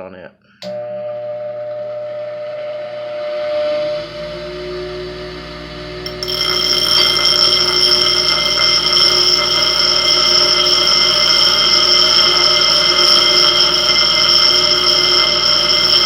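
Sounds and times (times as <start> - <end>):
power cutting tool whining: 6.1 - 16.0.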